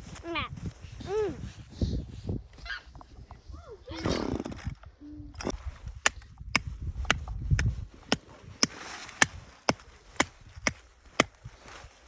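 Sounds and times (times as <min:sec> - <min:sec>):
axe chopping tree trunk: 0:06.0 - 0:11.4.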